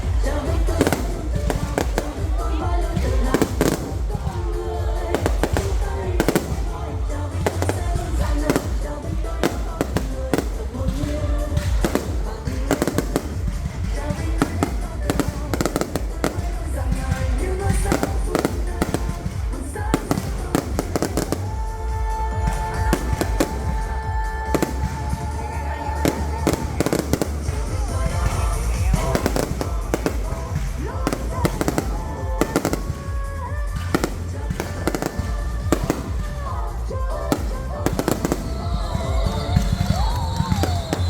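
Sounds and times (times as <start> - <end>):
continuous low rumble: 0.0 - 41.0
fireworks bangs: 0.0 - 41.0
music playing: 0.0 - 41.0.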